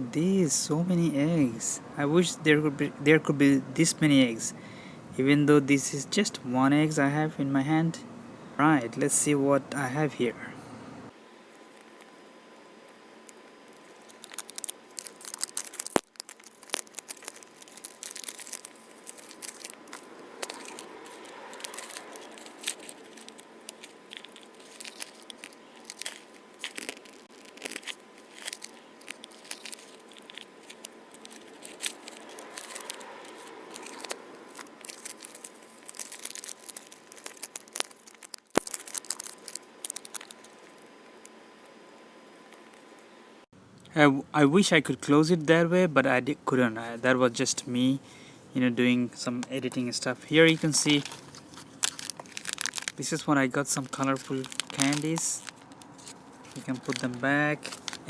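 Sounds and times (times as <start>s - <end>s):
wrapper crinkling and tearing: 13.3s - 41.4s, 49.4s - 58.0s.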